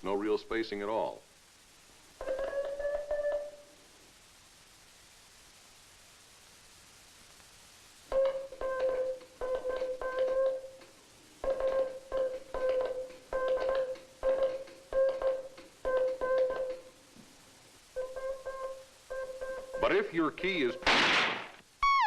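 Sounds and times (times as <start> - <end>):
morse code beeping: 18.0 - 20.8.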